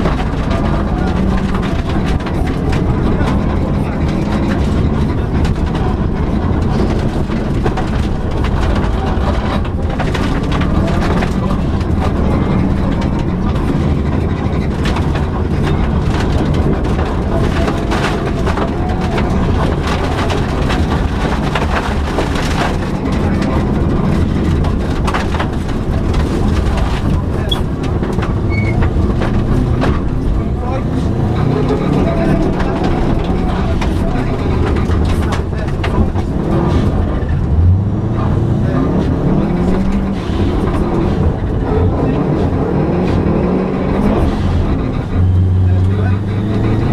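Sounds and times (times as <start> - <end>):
knocks and clatters: 0.0 - 46.9
rally car engine running hard: 0.0 - 46.9
road noise: 0.0 - 46.9.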